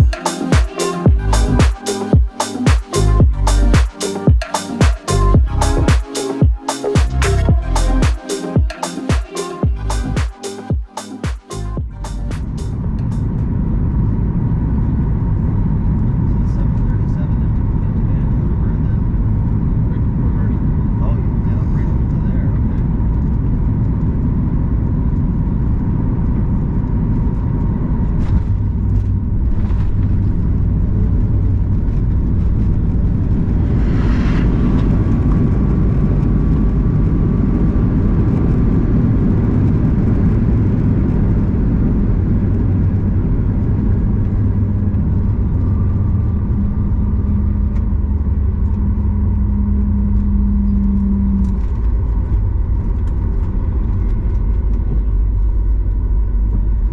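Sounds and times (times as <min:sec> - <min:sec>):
aircraft engines and airflow in cabin: 0:12.4 - 0:56.9.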